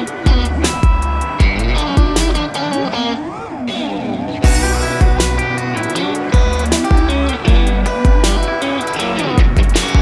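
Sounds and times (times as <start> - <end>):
background music: 0.0 - 10.0
deep bass hits dropping in pitch: 4.4 - 5.8, 6.4 - 8.6.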